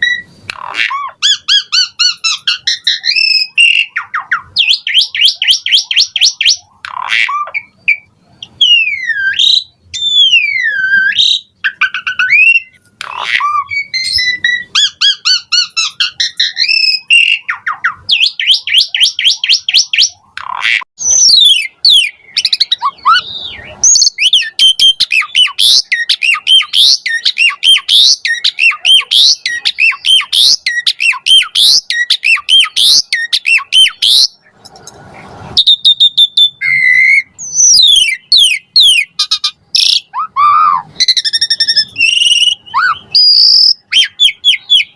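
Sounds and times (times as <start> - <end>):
starling singing varied song: 0.0 - 34.4.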